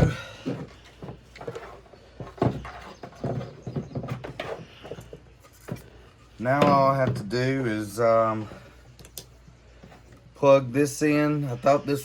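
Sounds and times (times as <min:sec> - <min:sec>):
knocks and rattles from handling motor parts: 0:00.0 - 0:07.6.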